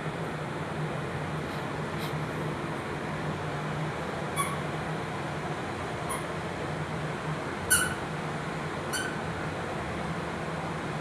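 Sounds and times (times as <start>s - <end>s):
low background hum: 0.0s - 11.0s
short high-pitched squeaks: 4.4s - 4.7s, 7.7s - 8.1s, 8.9s - 9.3s.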